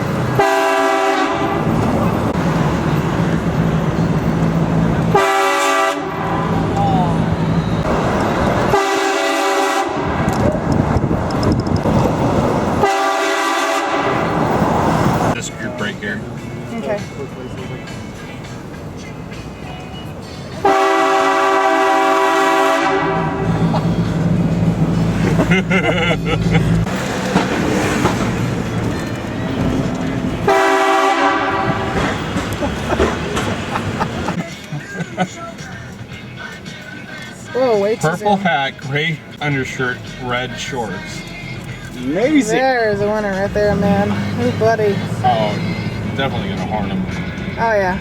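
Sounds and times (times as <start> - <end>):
road noise: 0.0 - 48.0
train horn blasting: 0.3 - 1.8, 5.1 - 6.6, 8.6 - 10.3, 12.8 - 14.4, 20.6 - 23.7, 30.4 - 32.0.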